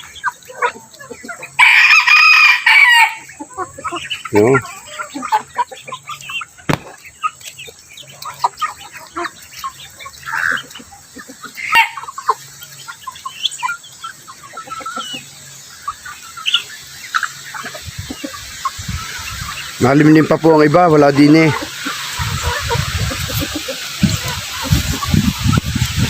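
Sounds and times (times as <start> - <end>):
chickens clucking: 0.0 - 26.0
sharp knocks: 6.7 - 7.0.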